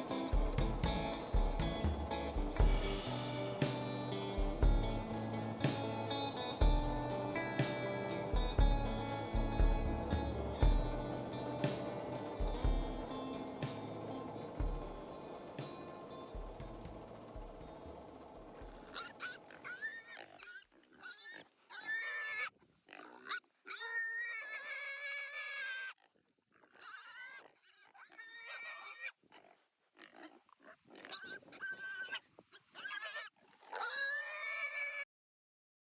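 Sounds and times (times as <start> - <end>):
animal squealing: 18.6 - 26.0, 26.6 - 35.0.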